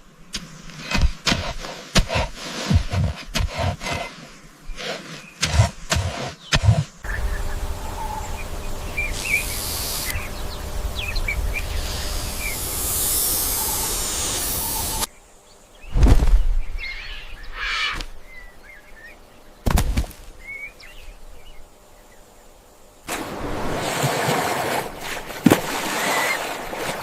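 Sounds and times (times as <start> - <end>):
rushing outdoor noise: 0.7 - 15.2
small birds chirping: 4.0 - 19.7.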